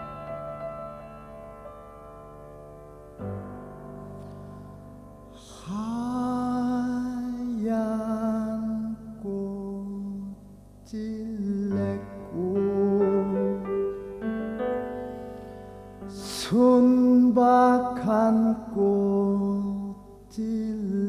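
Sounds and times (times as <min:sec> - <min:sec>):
piano accompaniment: 0:00.0 - 0:21.0
man singing with vibrato: 0:05.4 - 0:14.0, 0:16.1 - 0:21.0.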